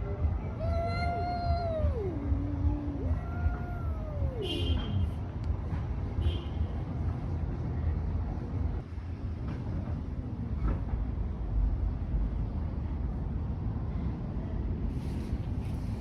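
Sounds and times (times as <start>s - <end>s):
steady low rumble: 0.0s - 6.2s
cat yowling: 0.5s - 4.6s.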